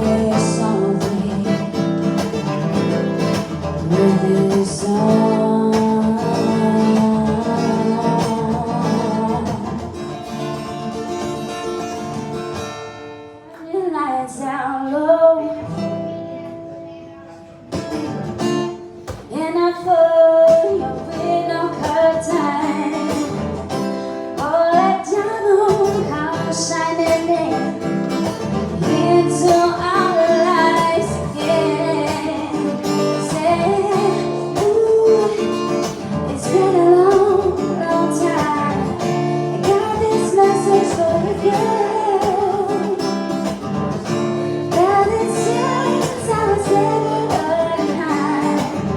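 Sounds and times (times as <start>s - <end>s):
person singing: 0.0s - 2.9s, 3.6s - 10.1s, 24.4s - 43.2s, 44.6s - 48.9s
acoustic guitar strumming: 0.0s - 13.8s, 14.8s - 48.9s.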